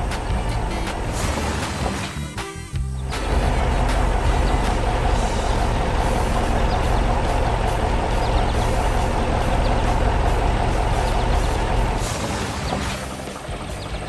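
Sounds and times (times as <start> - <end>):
heavy truck engine rumbling: 0.0 - 14.0
light regular ticking: 3.1 - 12.0.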